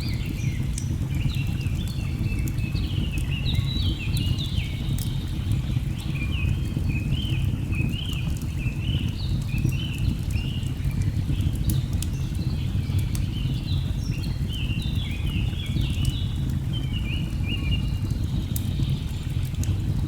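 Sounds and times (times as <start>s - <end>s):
wood fire crackling: 4.2s - 6.0s, 6.6s - 20.0s.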